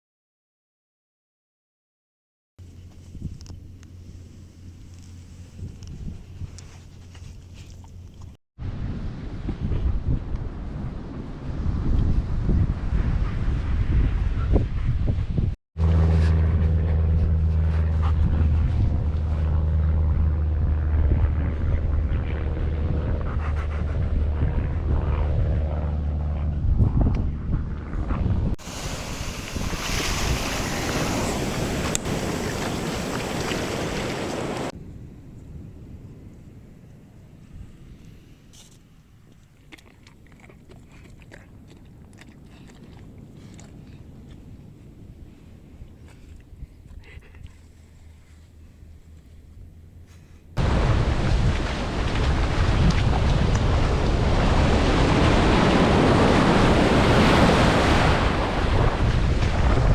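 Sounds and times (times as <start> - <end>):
low wind rumble: 2.6 - 59.9
dog chewing: 6.6 - 8.4, 39.3 - 44.4
engine droning steadily: 15.8 - 28.4.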